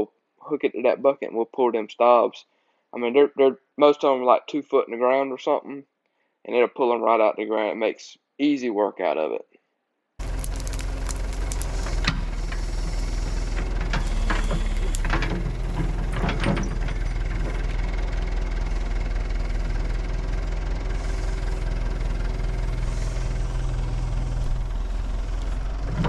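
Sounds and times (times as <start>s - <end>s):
backhoe engine running: 10.2s - 26.0s
metallic clanks and knocks: 13.6s - 17.6s.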